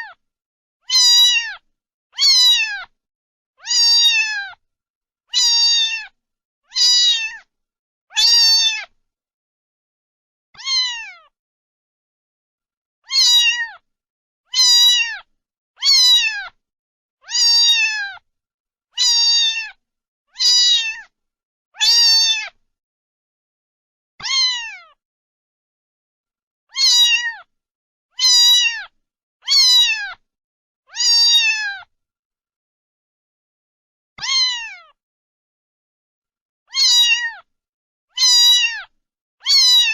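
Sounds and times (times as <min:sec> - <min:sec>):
cat meowing: 0:00.8 - 0:01.6, 0:02.2 - 0:03.0, 0:03.6 - 0:04.6, 0:05.3 - 0:07.5, 0:08.1 - 0:09.0, 0:10.6 - 0:11.4, 0:13.0 - 0:13.8, 0:14.5 - 0:16.6, 0:17.2 - 0:18.2, 0:19.0 - 0:21.1, 0:21.8 - 0:22.6, 0:24.2 - 0:25.0, 0:26.7 - 0:27.5, 0:28.2 - 0:30.2, 0:30.9 - 0:31.9, 0:34.2 - 0:35.0, 0:36.7 - 0:37.5, 0:38.1 - 0:39.9.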